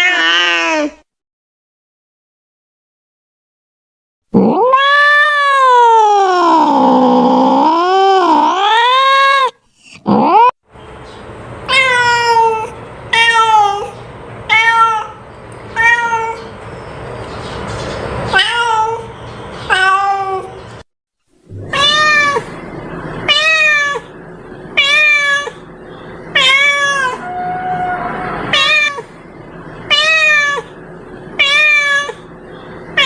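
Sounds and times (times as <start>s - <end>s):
cat meowing: 0.0s - 1.0s, 4.4s - 9.5s, 11.7s - 16.5s, 18.3s - 19.1s, 19.7s - 20.6s, 21.6s - 22.6s, 23.3s - 24.1s, 24.8s - 25.7s, 26.3s - 29.1s, 29.9s - 30.7s, 31.4s - 32.3s.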